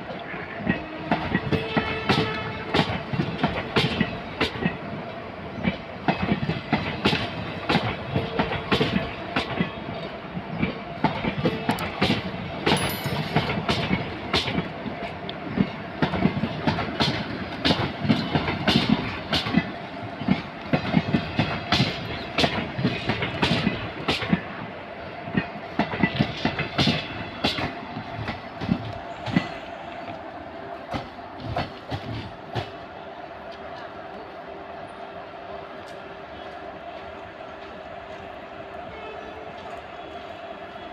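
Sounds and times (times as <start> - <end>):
train wheels clattering on rails: 0.0 - 30.2, 30.8 - 32.9.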